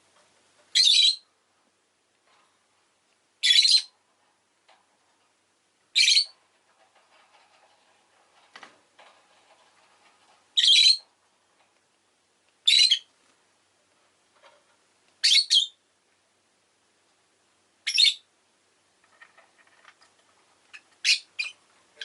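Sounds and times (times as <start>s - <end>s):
lovebird high-pitched calls: 0.7s - 1.3s, 3.4s - 3.9s, 5.9s - 6.4s, 10.6s - 11.1s, 12.6s - 13.1s, 15.2s - 15.8s, 17.8s - 18.2s, 20.7s - 21.6s.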